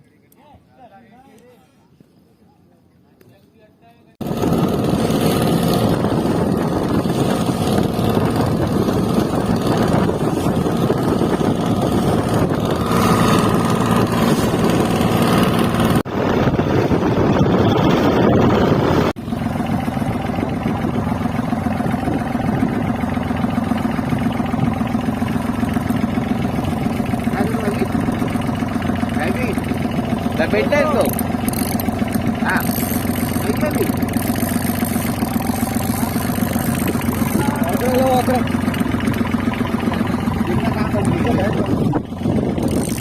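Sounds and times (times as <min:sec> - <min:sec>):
boat engine running: 0:04.2 - 0:43.0.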